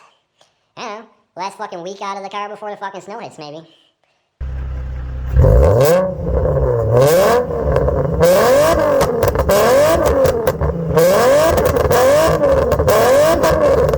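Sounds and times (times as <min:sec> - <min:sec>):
car engine revving: 0:04.4 - 0:13.9.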